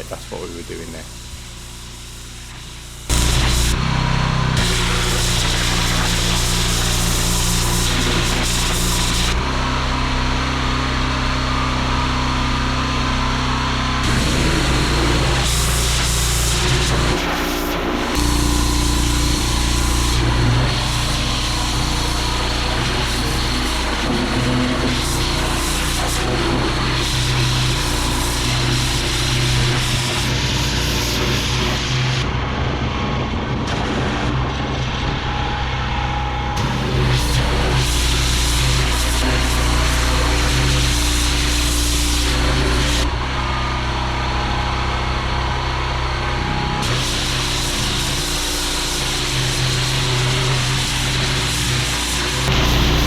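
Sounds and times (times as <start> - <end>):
pressure washer engine running: 0.0 - 32.2, 36.6 - 53.0
hissing water spray: 14.0 - 31.8, 46.9 - 53.0.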